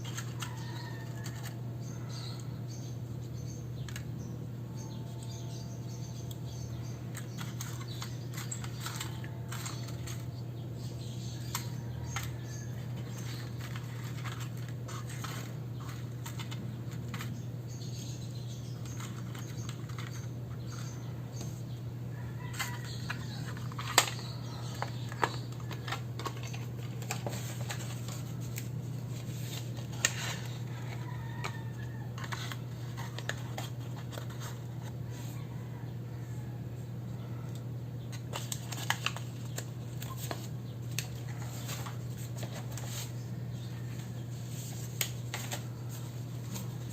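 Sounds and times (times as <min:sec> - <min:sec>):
steady low hum: 0:00.0 - 0:46.9
pen and paper clicks and scratches: 0:06.0 - 0:10.4, 0:11.2 - 0:17.4, 0:18.8 - 0:21.0.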